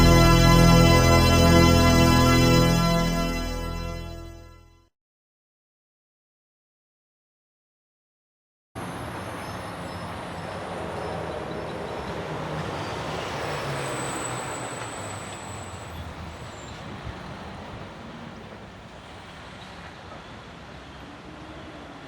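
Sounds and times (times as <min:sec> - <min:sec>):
high wheel squeal: 0:12.8 - 0:16.8.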